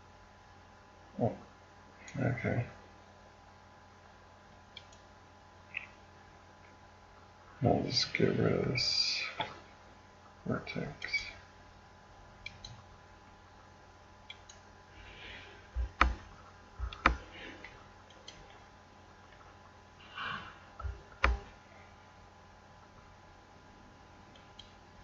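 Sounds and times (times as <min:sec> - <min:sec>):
computer mouse clicking: 0:04.7 - 0:05.1, 0:12.4 - 0:12.8, 0:14.3 - 0:14.6, 0:15.8 - 0:17.3, 0:18.1 - 0:18.6, 0:20.8 - 0:21.5, 0:24.3 - 0:24.8
soft breathing: 0:14.9 - 0:17.9, 0:20.0 - 0:21.0.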